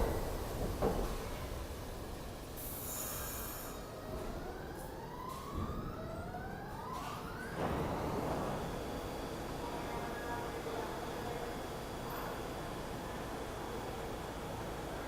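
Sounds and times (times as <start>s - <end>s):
train low rumble: 0.0s - 5.0s
subway motors whining: 0.0s - 15.0s.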